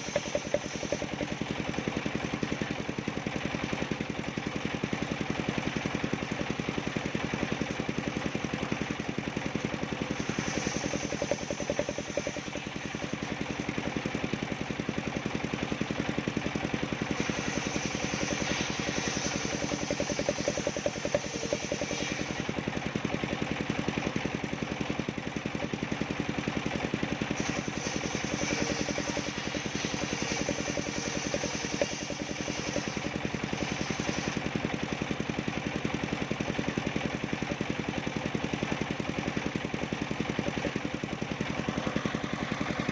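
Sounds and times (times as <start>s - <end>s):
saw blade cutting wood: 0.0s - 2.7s, 9.6s - 13.8s, 17.0s - 22.6s, 27.3s - 34.5s
circular saw engine running: 0.0s - 42.9s.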